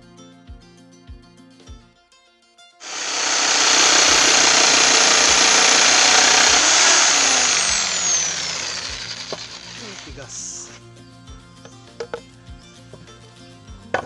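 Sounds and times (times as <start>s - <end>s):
electric jigsaw cutting wood: 2.8s - 10.8s.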